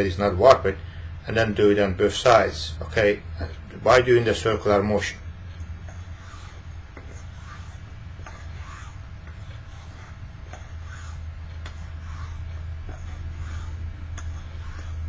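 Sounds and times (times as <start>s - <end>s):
steady low hum: 0.0s - 15.0s
razor scraping on whetstone: 5.8s - 15.0s.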